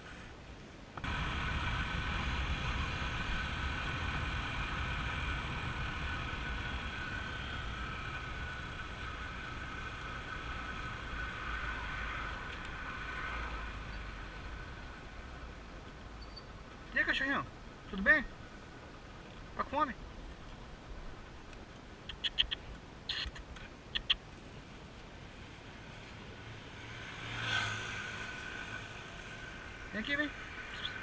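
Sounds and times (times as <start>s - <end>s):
vehicle engine low rumble: 0.0s - 31.0s
steady whining tones: 1.0s - 16.3s.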